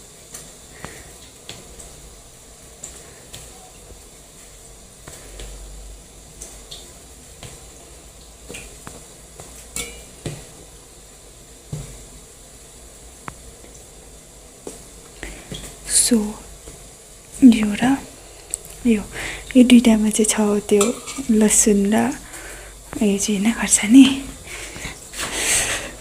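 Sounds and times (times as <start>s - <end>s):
faint steady hiss: 0.0s - 26.0s
dishes and utensils clinking: 9.8s - 10.1s, 20.8s - 21.4s.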